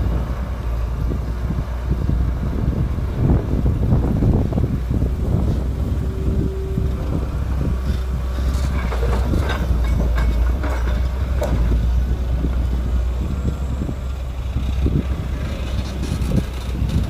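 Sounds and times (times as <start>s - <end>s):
excavator diesel engine rumbling: 0.0s - 17.0s
metallic clanks and knocks: 8.4s - 11.7s.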